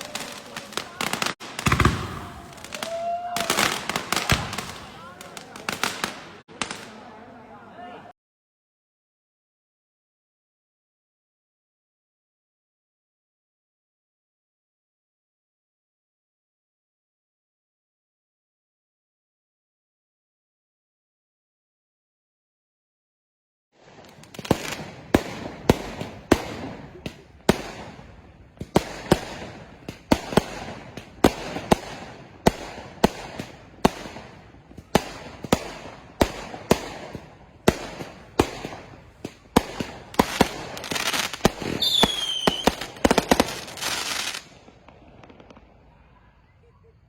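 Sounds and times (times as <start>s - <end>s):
fireworks bangs: 0.0s - 7.4s, 23.8s - 47.0s
fireworks crackling: 0.0s - 7.6s, 23.8s - 47.0s
falling whistle: 41.8s - 42.8s.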